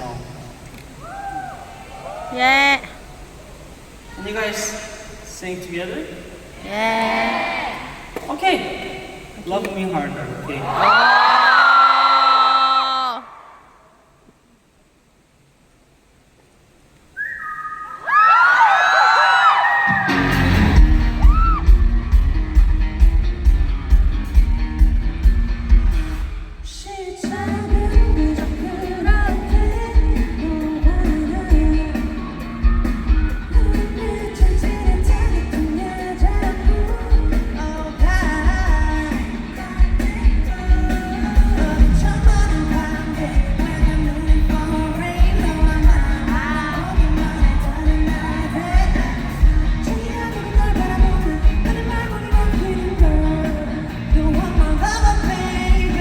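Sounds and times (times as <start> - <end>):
live pop-rock song with singing: 19.5 - 56.0.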